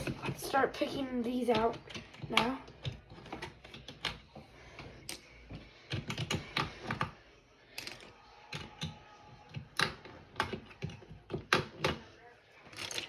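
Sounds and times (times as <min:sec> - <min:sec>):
plastic keycaps clicking: 0:01.5 - 0:05.2, 0:05.8 - 0:07.1.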